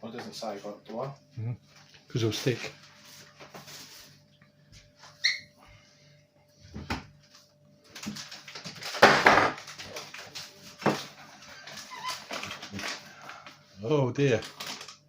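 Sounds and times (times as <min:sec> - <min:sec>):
packet rustling: 0:07.9 - 0:09.0, 0:09.6 - 0:13.6, 0:14.2 - 0:15.0.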